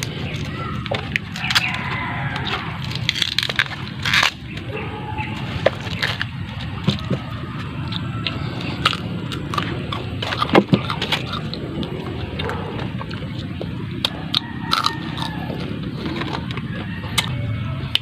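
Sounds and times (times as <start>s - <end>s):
crisp chewing crunches: 0.0s - 18.0s.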